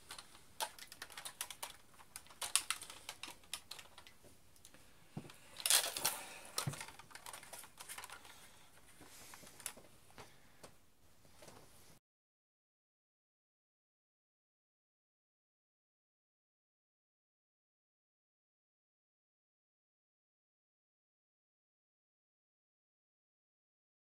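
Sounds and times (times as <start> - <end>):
plastic rifle clicks and rattles: 0.0 - 4.2, 5.3 - 8.4.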